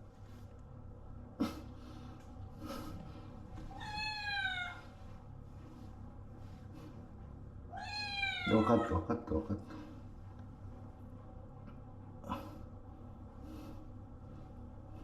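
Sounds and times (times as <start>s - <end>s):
cat meowing: 3.7s - 4.8s, 7.7s - 9.1s.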